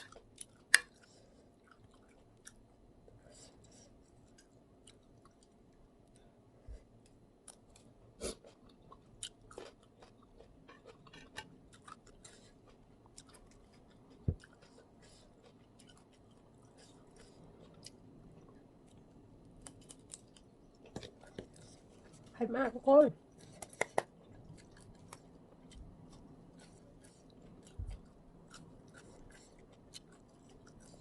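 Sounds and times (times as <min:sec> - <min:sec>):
close chewing with wet mouth clicks: 0:00.0 - 0:02.6, 0:08.4 - 0:22.3, 0:23.3 - 0:31.0.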